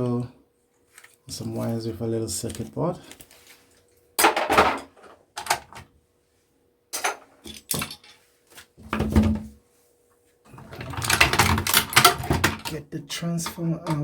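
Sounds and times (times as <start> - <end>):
plastic and metal parts clattering: 4.2 - 5.9, 7.0 - 8.2, 10.5 - 12.8.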